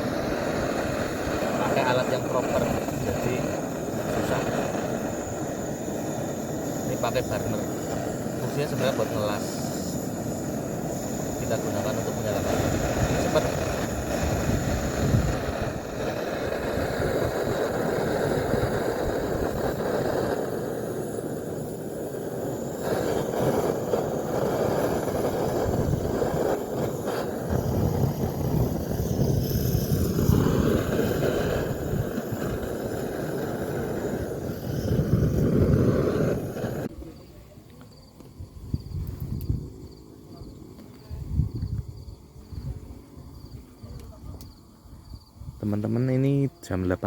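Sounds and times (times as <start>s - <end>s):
wind buffeting: 0.0s - 46.0s
gas torch flame rushing: 0.0s - 46.2s.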